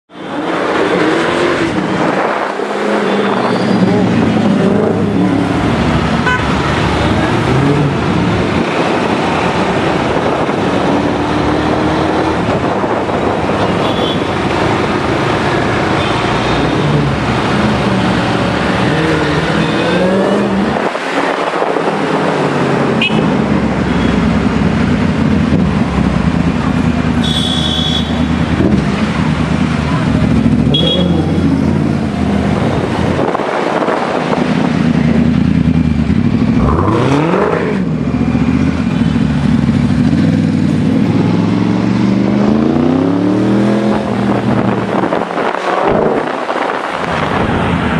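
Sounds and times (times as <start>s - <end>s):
traffic noise: 0.1s - 47.9s
car engine revving: 0.2s - 47.9s
car horn toots: 6.2s - 6.6s, 13.6s - 14.4s, 23.0s - 24.2s, 27.2s - 28.4s, 30.7s - 31.3s.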